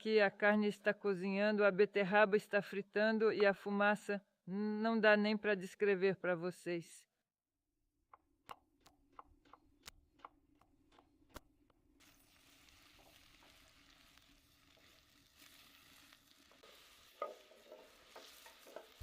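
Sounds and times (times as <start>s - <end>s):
food sizzling and popping in pan: 12.0s - 19.0s.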